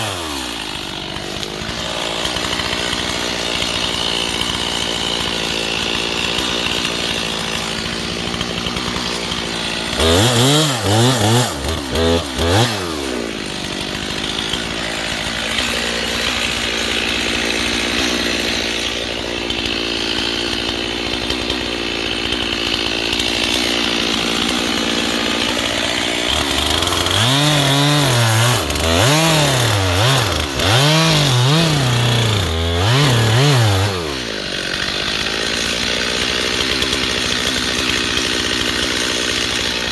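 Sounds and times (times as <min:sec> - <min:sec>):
chainsaw engine idling and revving: 0:00.0 - 0:39.9.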